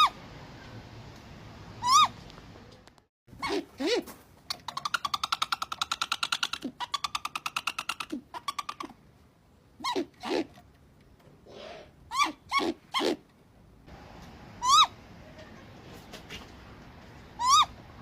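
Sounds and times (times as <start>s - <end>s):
owl rattling call: 3.4s - 9.0s, 14.6s - 14.9s, 17.4s - 17.7s.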